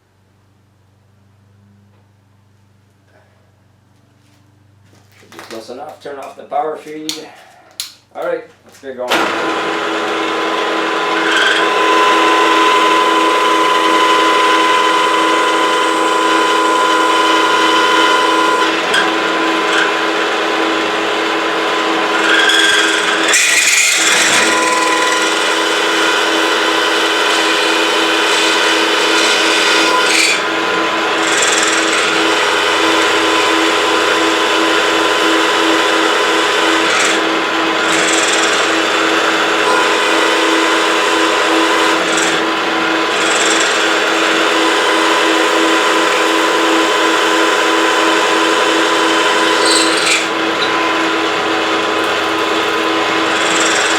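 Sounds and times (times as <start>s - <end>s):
milling machine drone: 9.1s - 53.9s
metal cutting rasp: 22.1s - 53.9s.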